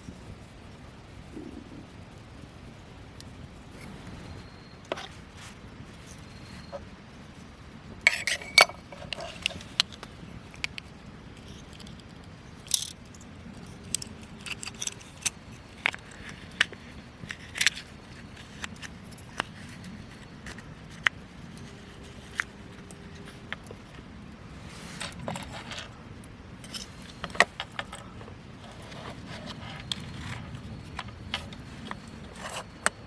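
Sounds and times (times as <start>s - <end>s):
metal cooking gear clinking: 8.1s - 9.9s, 12.6s - 13.2s.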